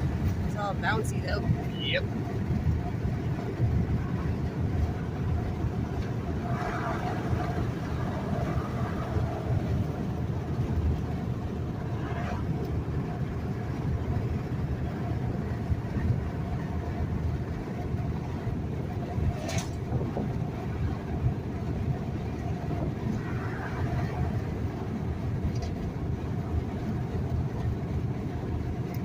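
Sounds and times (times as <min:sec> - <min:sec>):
truck road and engine rumble: 0:00.0 - 0:29.0.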